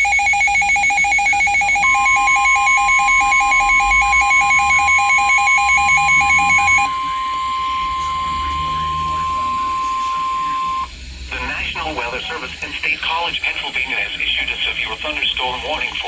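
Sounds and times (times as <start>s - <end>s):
two-pitch electronic beeping: 0.0s - 10.9s
steady warning tone: 0.0s - 16.0s.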